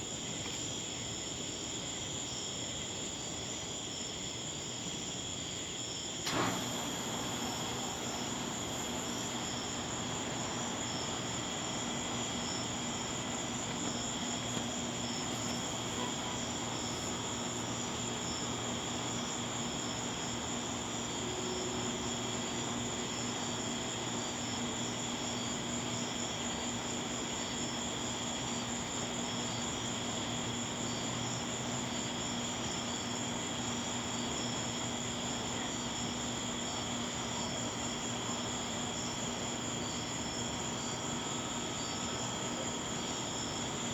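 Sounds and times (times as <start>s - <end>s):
thin high whine: 6.2s - 22.8s
aircraft engine drone: 6.2s - 23.6s
constant hums: 6.3s - 43.9s.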